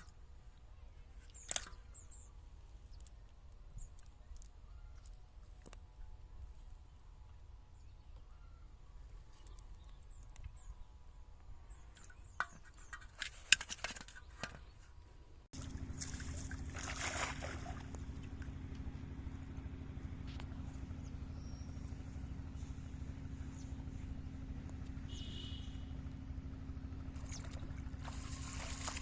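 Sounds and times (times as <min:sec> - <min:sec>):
low motor hum: 0:00.0 - 0:29.0
water splashing: 0:15.6 - 0:18.5, 0:27.1 - 0:29.0.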